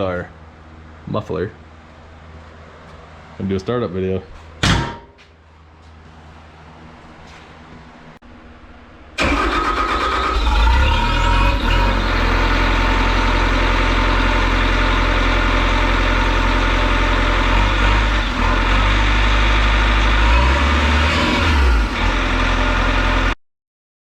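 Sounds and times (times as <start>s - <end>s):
diesel engine idling: 9.2s - 23.4s.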